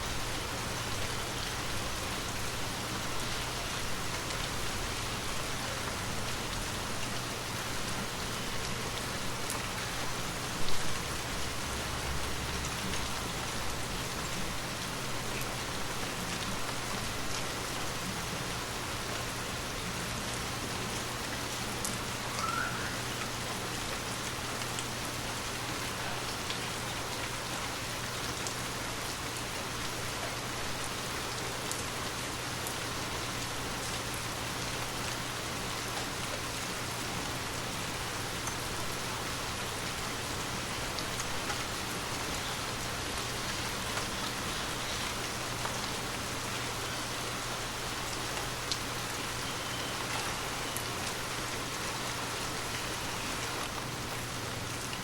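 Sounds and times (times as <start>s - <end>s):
gentle rain falling: 0.0s - 55.0s
raindrops ticking on a surface: 0.0s - 55.0s.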